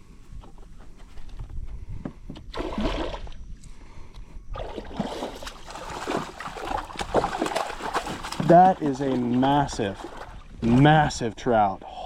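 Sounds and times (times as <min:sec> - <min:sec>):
wind rumble on microphone: 0:00.0 - 0:05.0
water splashing and sloshing: 0:02.5 - 0:03.4, 0:04.5 - 0:11.9
fish thrashing at the surface: 0:04.6 - 0:10.6.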